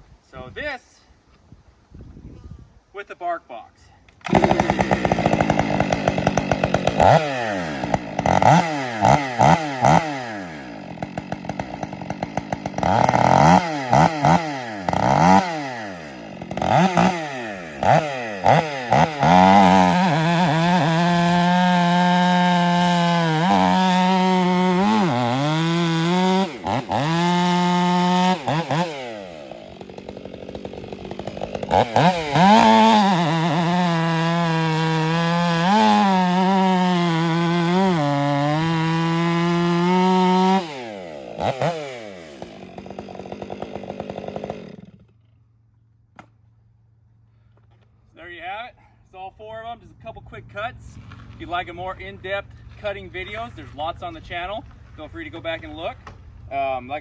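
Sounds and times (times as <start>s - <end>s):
chainsaw cutting wood: 4.1s - 45.4s.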